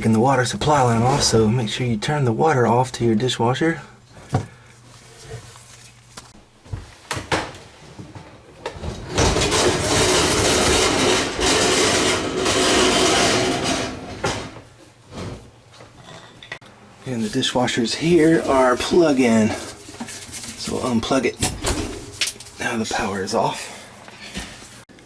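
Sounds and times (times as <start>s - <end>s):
dishwasher scraping across floor: 0.6s - 1.7s, 7.7s - 16.4s, 17.2s - 23.5s.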